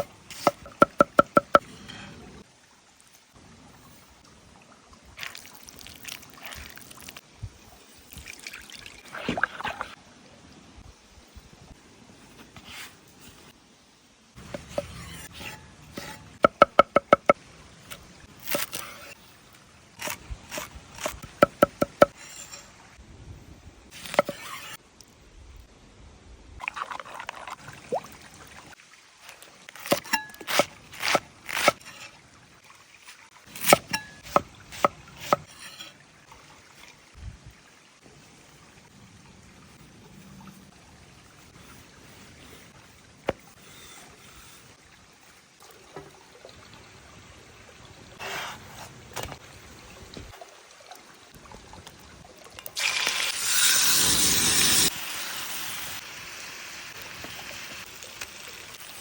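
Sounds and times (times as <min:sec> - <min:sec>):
sharp knocks and taps: 0:00.0 - 0:01.6, 0:16.4 - 0:17.4, 0:21.4 - 0:22.1
liquid pouring and trickling: 0:05.1 - 0:07.2, 0:08.0 - 0:10.0, 0:26.6 - 0:30.4.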